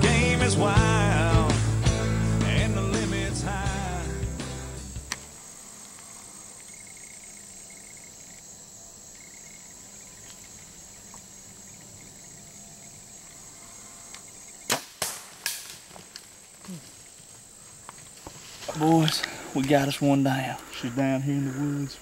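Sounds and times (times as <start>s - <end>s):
insects droning: 0.0s - 22.0s
bow shot snaps: 5.0s - 6.1s, 14.1s - 16.3s
faint rustles: 15.3s - 19.9s.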